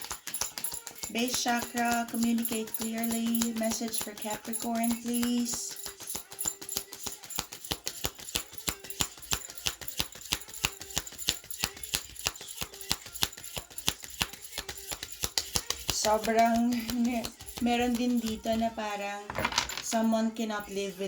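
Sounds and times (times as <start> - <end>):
cards being shuffled: 11.9 - 20.0.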